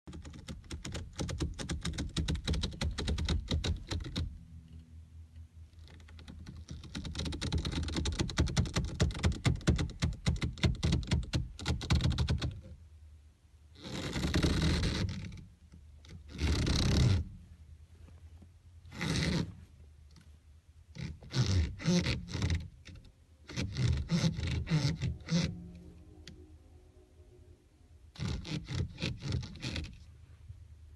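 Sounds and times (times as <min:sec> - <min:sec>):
rubber creaking as stretched: 0:00.1 - 0:04.4, 0:05.7 - 0:12.8, 0:13.7 - 0:17.4, 0:18.8 - 0:20.3, 0:20.9 - 0:26.4, 0:28.1 - 0:30.1.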